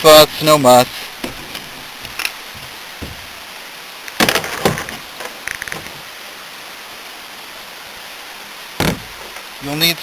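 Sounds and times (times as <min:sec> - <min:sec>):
sharp knocks: 0:03.0 - 0:03.3, 0:04.2 - 0:05.0, 0:08.8 - 0:09.2.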